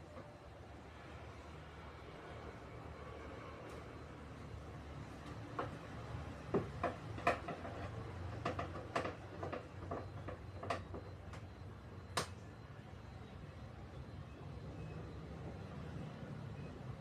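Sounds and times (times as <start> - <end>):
light clicks and knocks: 5.2 - 12.4.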